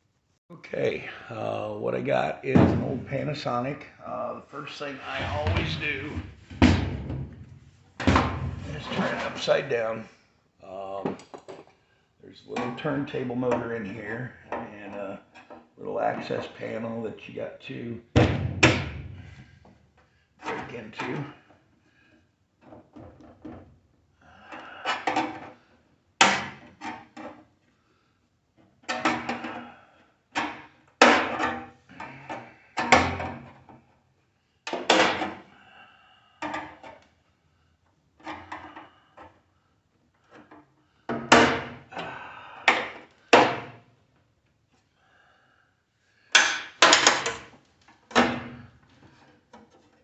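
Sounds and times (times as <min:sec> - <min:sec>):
sheet metal bangs and clatter: 0:18.2 - 0:19.3.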